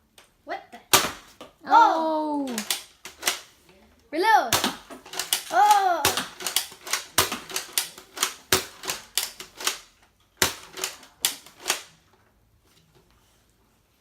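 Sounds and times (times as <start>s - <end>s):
toy dart blaster firing: 4.5s - 9.7s.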